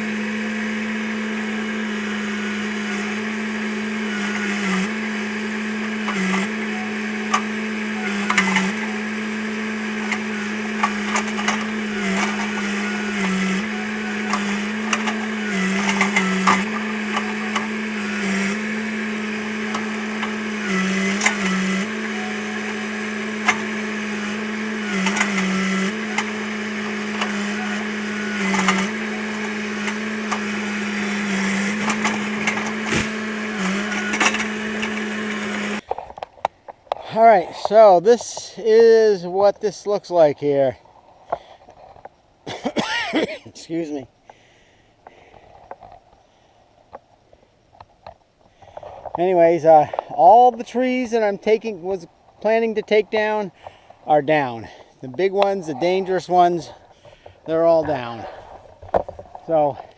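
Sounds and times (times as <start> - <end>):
excavator engine running: 0.0 - 35.8.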